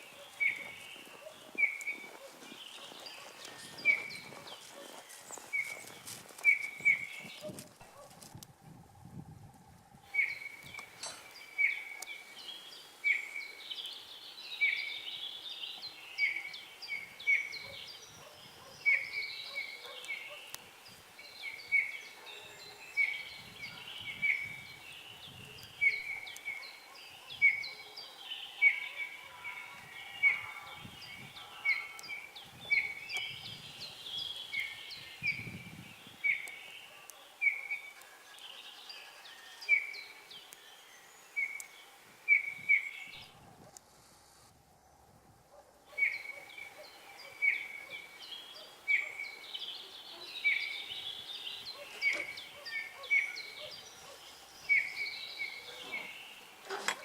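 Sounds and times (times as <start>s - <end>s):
birds twittering: 0.0s - 8.1s, 10.1s - 43.4s, 45.5s - 57.0s.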